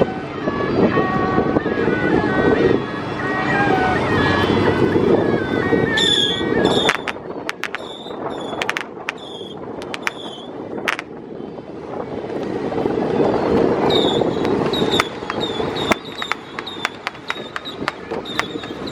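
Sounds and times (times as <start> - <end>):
steady rumbling: 4.6 - 18.9
firecracker bangs: 6.8 - 11.1, 14.9 - 18.8.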